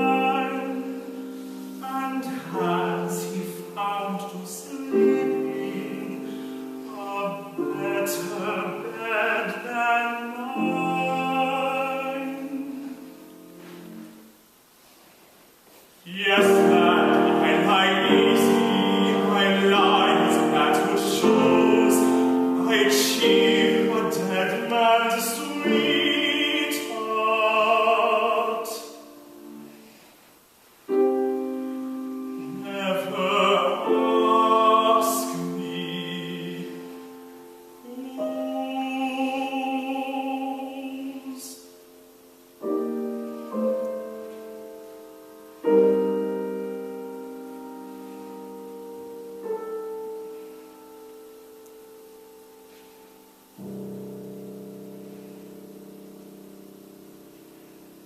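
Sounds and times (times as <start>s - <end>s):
trained solo voice singing: 0.0s - 14.3s, 16.0s - 29.8s, 31.1s - 43.7s
piano accompaniment: 0.0s - 58.0s.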